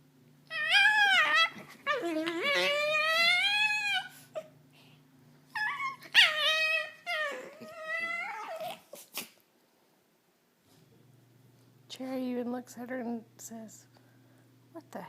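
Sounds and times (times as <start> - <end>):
small dog whining: 0.5 - 4.6, 5.5 - 9.4.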